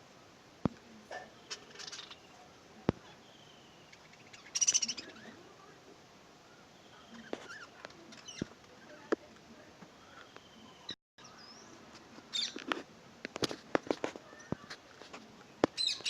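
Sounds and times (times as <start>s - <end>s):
parrot chirping and squawking: 1.4s - 2.3s, 3.9s - 5.4s.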